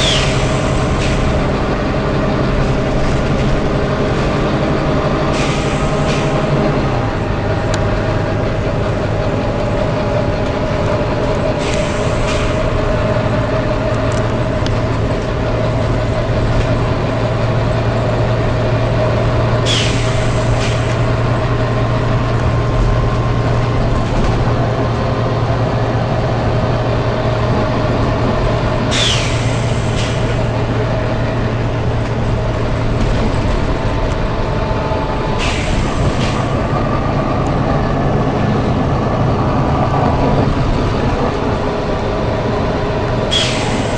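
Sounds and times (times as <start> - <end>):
bus diesel engine running: 0.0 - 43.9
compressed air hisses: 5.3 - 6.4, 11.6 - 12.6, 19.7 - 21.0, 28.9 - 30.4, 35.4 - 36.4, 43.3 - 43.9.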